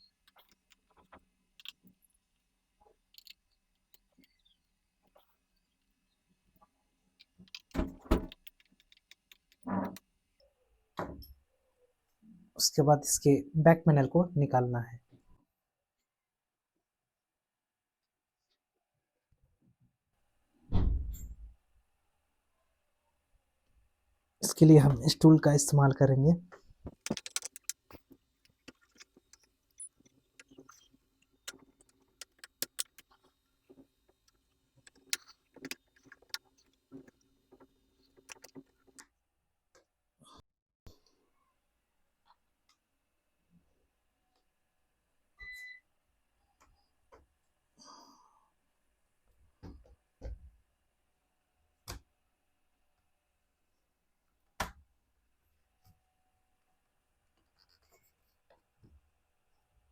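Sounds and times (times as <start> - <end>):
plastic clips clicking: 26.9 - 28.0, 31.5 - 33.1
plastic clips clicking loose: 32.2 - 33.1.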